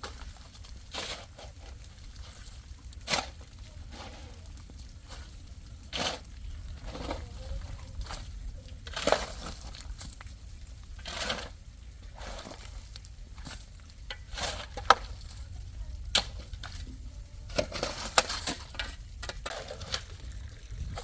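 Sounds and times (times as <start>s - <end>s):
steady low rumble: 1.6s - 21.0s.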